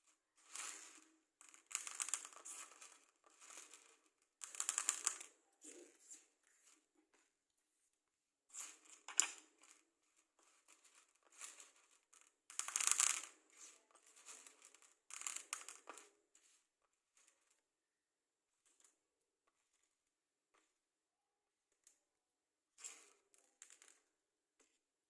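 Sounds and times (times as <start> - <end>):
matchsticks rattling and scraping: 0.4 - 6.8, 8.5 - 16.6.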